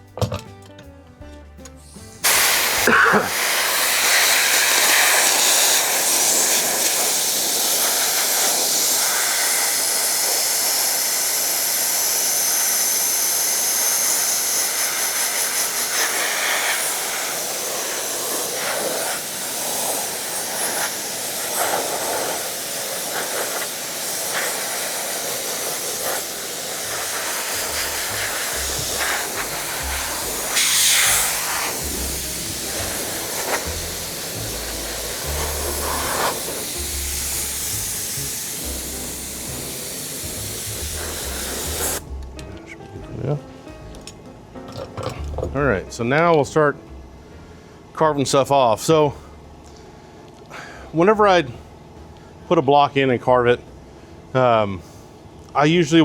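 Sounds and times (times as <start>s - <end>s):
foam adhesive spraying hiss: 1.9s - 42.1s.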